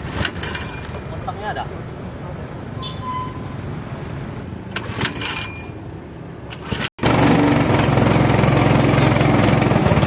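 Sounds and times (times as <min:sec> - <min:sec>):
handling clatters: 0:00.2 - 0:01.1.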